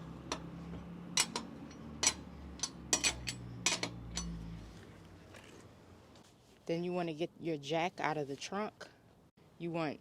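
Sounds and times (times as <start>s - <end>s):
metallic clinks of tools: 1.2s - 4.4s.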